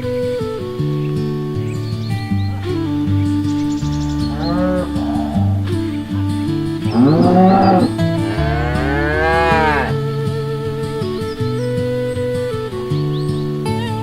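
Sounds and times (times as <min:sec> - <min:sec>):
background music: 0:00.0 - 0:14.0
cattle mooing: 0:04.1 - 0:10.0.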